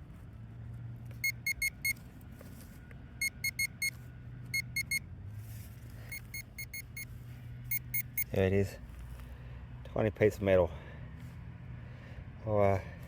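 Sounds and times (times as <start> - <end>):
metal detector beeping: 1.2 - 2.0, 3.2 - 5.0, 6.0 - 7.1, 7.7 - 8.4.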